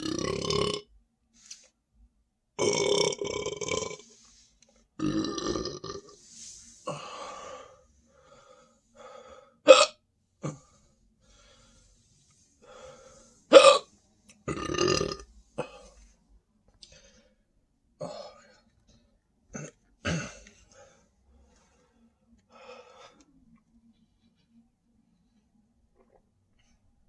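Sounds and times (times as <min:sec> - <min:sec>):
person burping: 0:00.0 - 0:00.9, 0:02.6 - 0:04.0, 0:05.0 - 0:06.2, 0:09.7 - 0:10.7, 0:13.5 - 0:15.9, 0:19.5 - 0:20.5
sharp hiccups: 0:09.7 - 0:10.0, 0:13.5 - 0:13.9.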